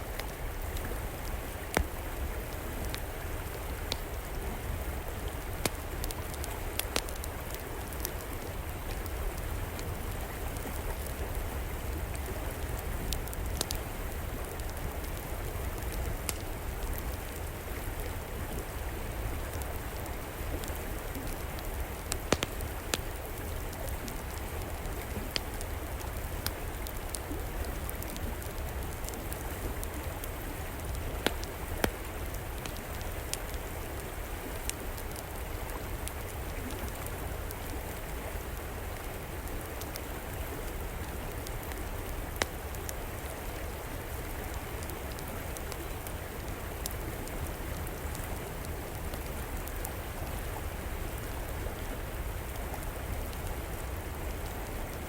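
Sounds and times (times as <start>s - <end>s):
river flowing: 0.0s - 55.0s
wood fire crackling: 0.0s - 55.0s.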